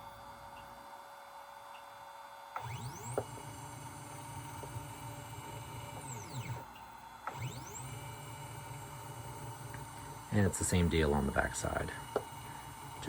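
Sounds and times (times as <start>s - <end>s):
stepper motor whine: 0.0s - 13.0s.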